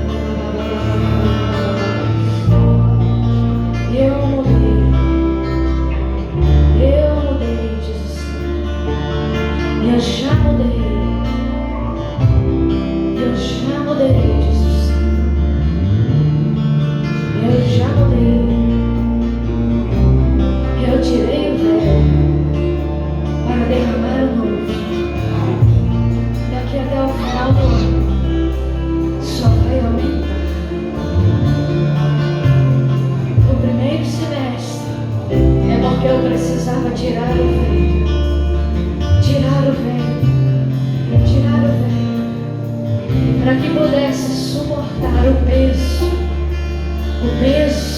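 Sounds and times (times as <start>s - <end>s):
people singing: 0.0s - 8.6s
band playing slow chords: 0.0s - 47.9s
deep bass: 0.0s - 47.9s
guitar: 0.0s - 47.9s.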